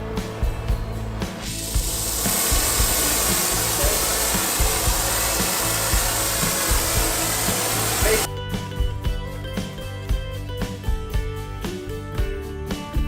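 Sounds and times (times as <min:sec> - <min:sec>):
background music: 0:00.0 - 0:13.0
torch flame hissing: 0:01.4 - 0:08.3.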